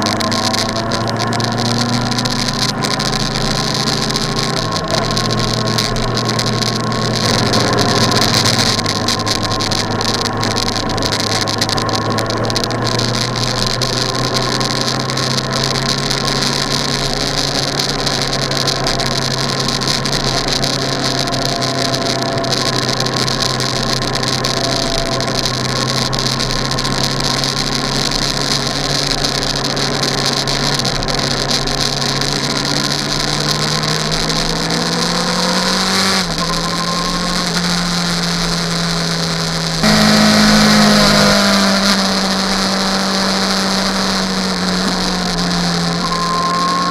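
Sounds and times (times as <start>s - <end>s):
vehicle engine running: 0.0s - 46.9s.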